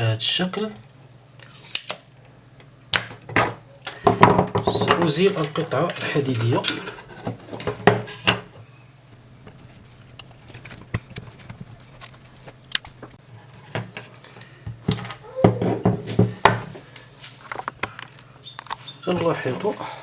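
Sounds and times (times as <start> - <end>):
small metal clicks and scraping: 9.4 - 15.2.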